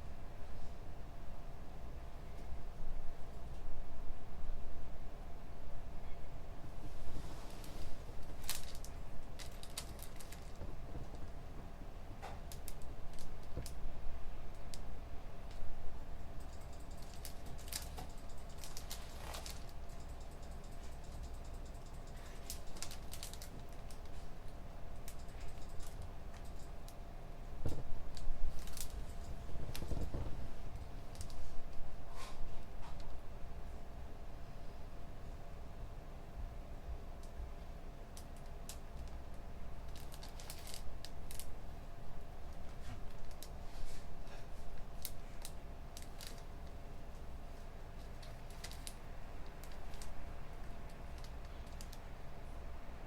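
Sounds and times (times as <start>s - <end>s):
low room hum: 0.0s - 53.0s
keyboard typing: 16.4s - 24.2s, 25.0s - 27.0s.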